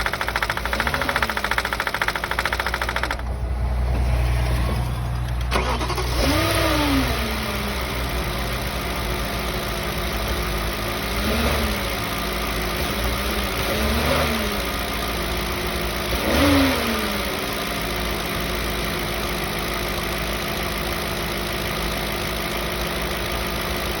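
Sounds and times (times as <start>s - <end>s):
engine rattle: 0.0s - 13.7s
car engine idling and revving: 0.0s - 24.0s.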